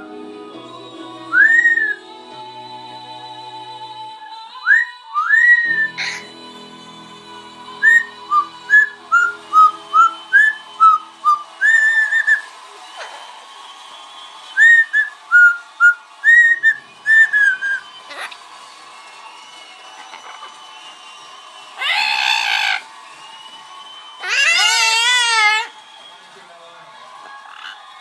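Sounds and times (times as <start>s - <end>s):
parrot whistling: 1.0s - 26.2s.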